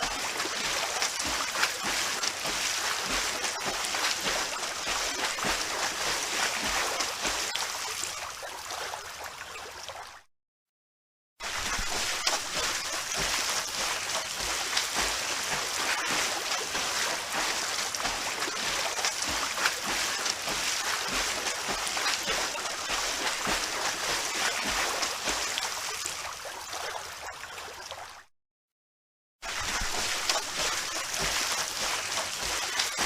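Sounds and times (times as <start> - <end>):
pool water splashing: 0.0 - 10.1, 11.4 - 28.2, 29.4 - 33.0.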